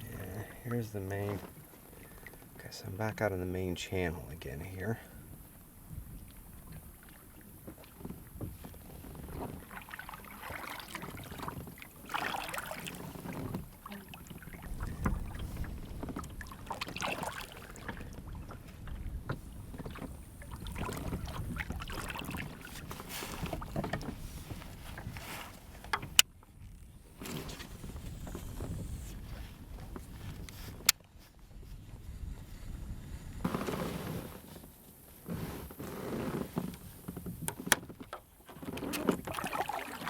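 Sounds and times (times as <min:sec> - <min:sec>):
paddle strokes swishing in water: 0:00.0 - 0:03.0, 0:04.4 - 0:40.0.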